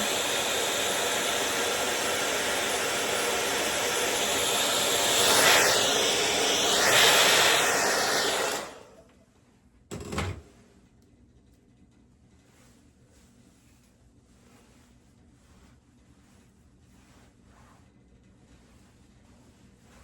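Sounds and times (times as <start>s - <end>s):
hair dryer blowing: 0.0s - 9.1s.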